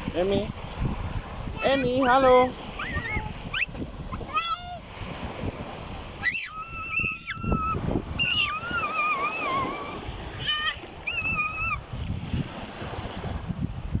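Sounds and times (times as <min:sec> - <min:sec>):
dog whining: 0:08.2 - 0:11.7.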